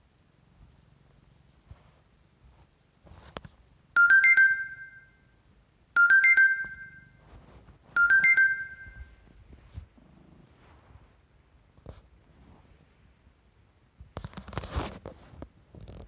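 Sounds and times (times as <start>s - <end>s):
smartphone notification chime: 4.0s - 5.1s, 6.0s - 7.1s, 8.0s - 9.2s.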